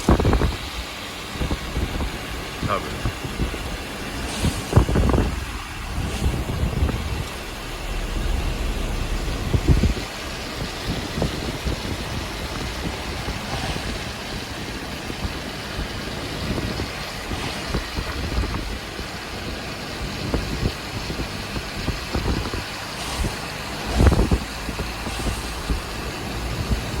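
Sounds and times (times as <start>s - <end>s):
road noise: 0.0s - 27.0s
car engine: 1.4s - 17.3s
low thump: 4.6s - 12.4s.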